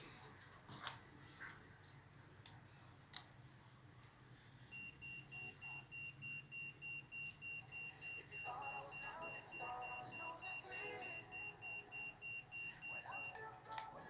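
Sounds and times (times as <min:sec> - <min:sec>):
faint music through headphones: 0:00.0 - 0:14.0
high electronic beep: 0:04.8 - 0:13.6.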